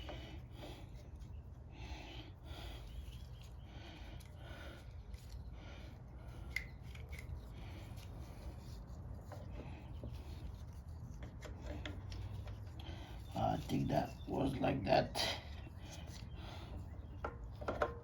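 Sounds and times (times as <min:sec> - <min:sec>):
small parts clicking and rubbing: 0:06.4 - 0:09.5.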